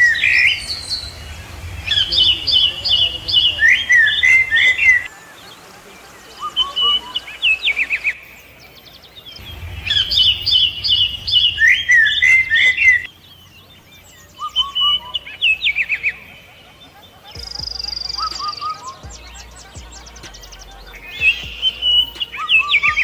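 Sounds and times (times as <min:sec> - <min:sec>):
steady high buzz: 0:00.0 - 0:14.4
birds chirping: 0:00.0 - 0:23.0.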